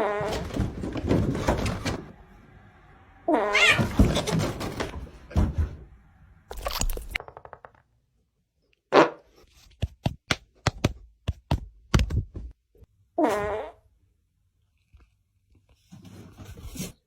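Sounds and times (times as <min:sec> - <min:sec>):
cat meowing: 0:03.3 - 0:04.1
fart sound effects: 0:13.2 - 0:13.8.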